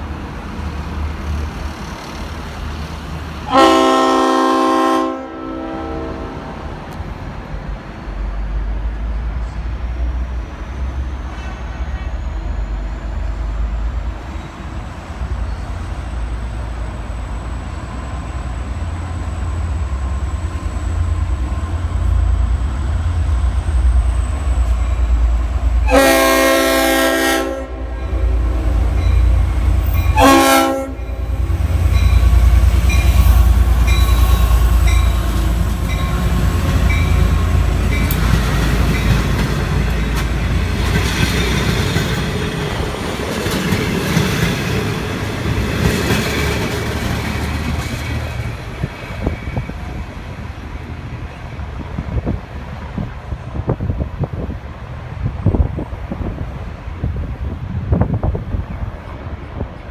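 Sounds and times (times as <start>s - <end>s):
train horn blasts: 3.5s - 6.8s, 25.8s - 39.2s
locomotive engine rumbling: 6.7s - 59.9s.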